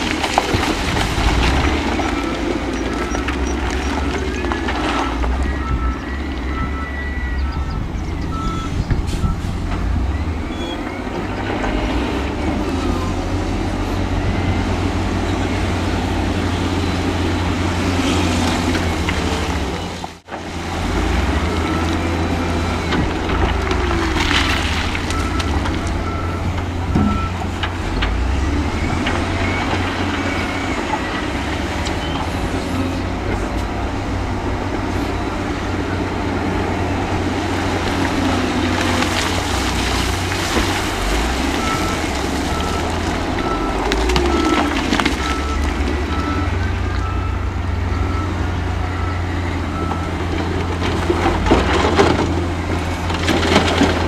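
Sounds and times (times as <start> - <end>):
diesel machinery engine rumble: 0.0 - 54.0
reversing alarm beeping: 1.9 - 12.2, 25.0 - 27.5, 41.4 - 50.4.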